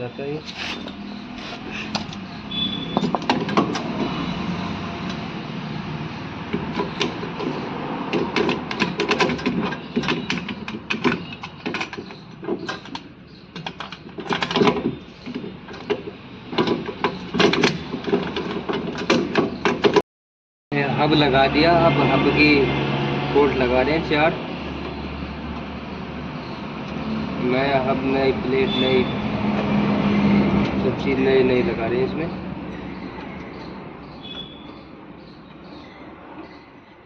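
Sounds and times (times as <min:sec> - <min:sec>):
metal parts clinking and knocking: 0:03.0 - 0:03.9.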